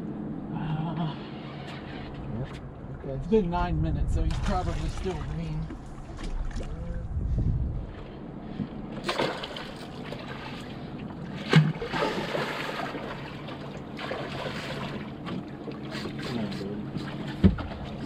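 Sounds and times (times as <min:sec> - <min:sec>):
water splashing against boat: 0:04.1 - 0:18.0.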